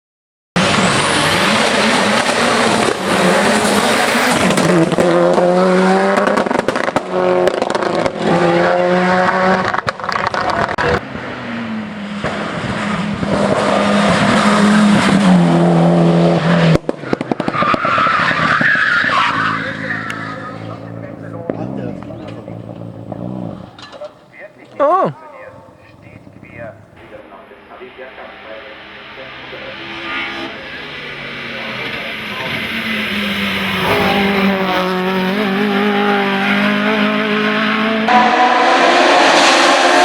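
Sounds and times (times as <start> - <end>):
race car engines revving: 0.6 - 40.0
tyres squealing: 18.0 - 27.1.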